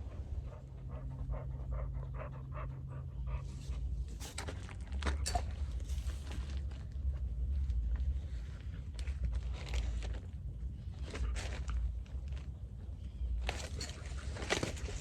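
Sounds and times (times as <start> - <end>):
dog panting: 0.0 - 5.2.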